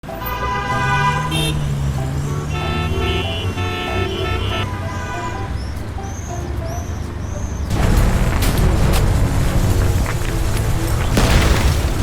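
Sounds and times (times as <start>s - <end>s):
low engine rumble: 1.9s - 12.0s
high chirping tones: 2.7s - 7.7s.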